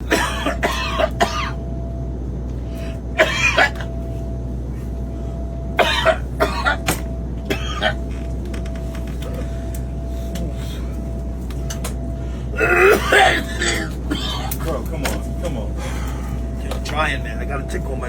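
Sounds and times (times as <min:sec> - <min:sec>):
man coughing: 0:00.0 - 0:01.6, 0:03.2 - 0:04.0, 0:05.8 - 0:08.1, 0:12.5 - 0:14.8
airliner cabin hum: 0:00.0 - 0:18.0.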